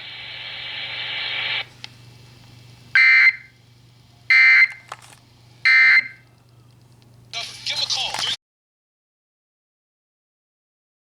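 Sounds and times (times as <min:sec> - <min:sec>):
steady buzzy noise: 0:00.0 - 0:07.6.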